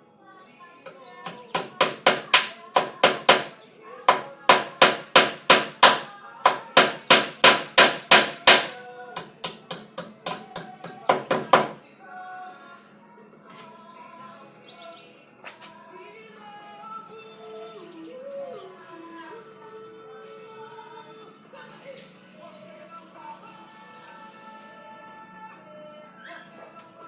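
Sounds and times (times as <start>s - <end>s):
caged birds chirping faintly: 0.0s - 27.0s
hammer blows: 1.3s - 11.8s.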